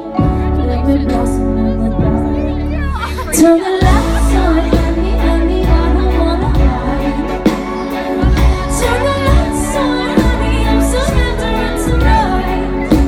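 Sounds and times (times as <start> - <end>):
heavy bass: 0.0 - 13.0
live pop band playing: 0.0 - 13.0
woman singing: 0.0 - 13.0
steady drum beat: 3.2 - 13.0.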